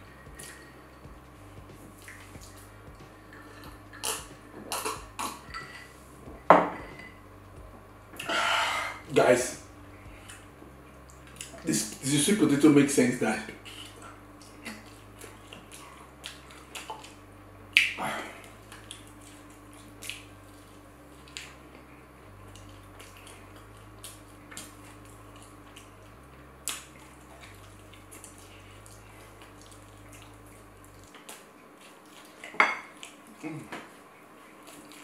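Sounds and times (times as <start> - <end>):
chewing mouth sounds: 2.0 - 5.8, 22.5 - 33.5
loud bite: 3.9 - 5.5.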